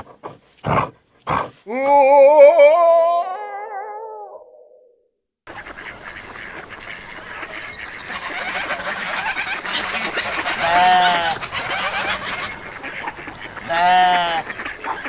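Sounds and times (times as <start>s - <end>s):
geese honking and cackling: 5.5s - 15.0s.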